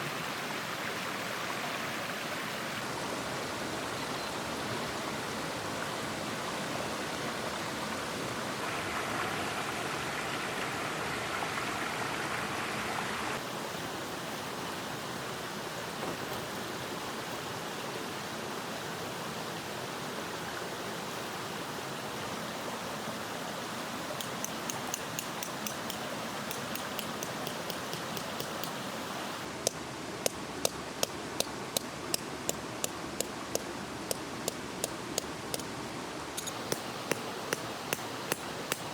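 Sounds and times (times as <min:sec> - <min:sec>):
mountain stream running: 0:00.0 - 0:38.9
sharp evenly spaced clicks: 0:24.2 - 0:28.8, 0:36.4 - 0:38.9.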